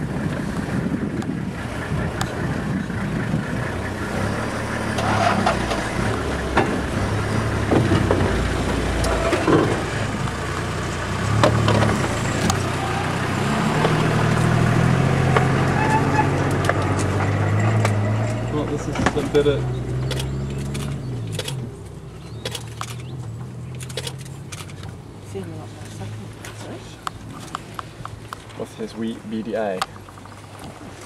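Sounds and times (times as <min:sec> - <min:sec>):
vehicle engine running: 0:00.0 - 0:30.4
knocks and rattles: 0:04.2 - 0:10.5.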